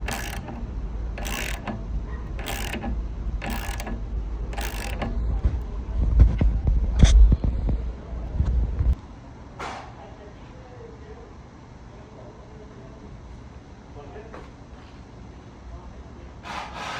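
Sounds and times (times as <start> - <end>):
noisy construction strokes: 0.0 - 5.7, 16.4 - 16.9
steady low rumble: 1.8 - 9.0.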